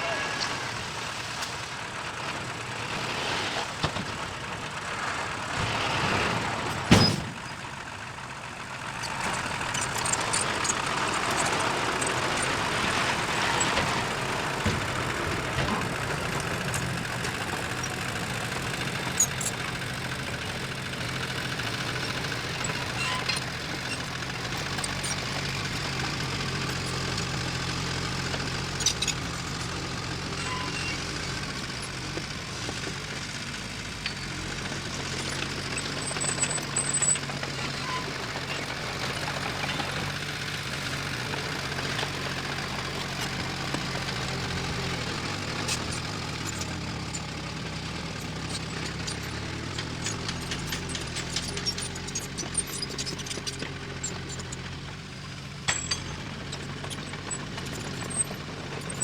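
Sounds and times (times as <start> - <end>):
heavy machinery diesel engine running: 0.0 - 59.0.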